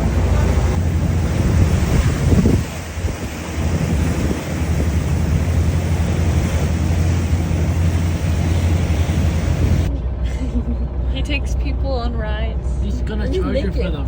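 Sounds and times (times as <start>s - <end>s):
wind buffeting microphone: 0.0s - 9.9s.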